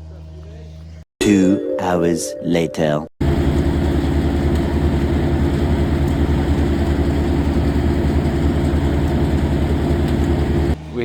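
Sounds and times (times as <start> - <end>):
large engine running steadily: 3.2 - 10.8.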